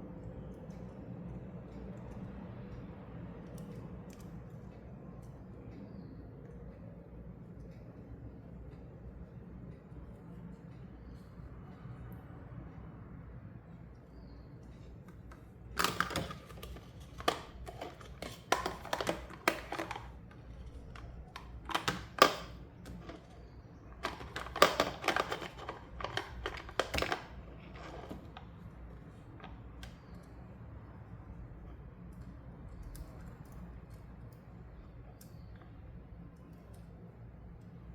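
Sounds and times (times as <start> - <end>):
plastic toy pieces clicking: 15.8 - 28.5
packaging rustling: 24.0 - 28.4.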